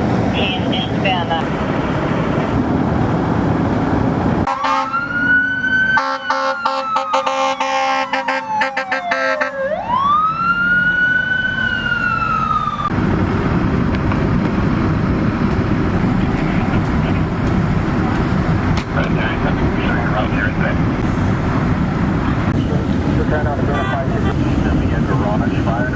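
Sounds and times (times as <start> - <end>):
steady rushing noise: 0.0 - 4.5, 12.8 - 25.9
emergency vehicle siren wailing: 4.4 - 25.9.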